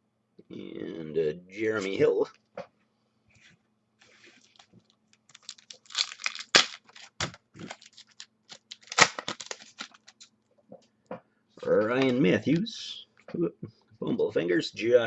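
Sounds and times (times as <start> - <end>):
wrapper tearing and crinkling: 4.0 - 10.3.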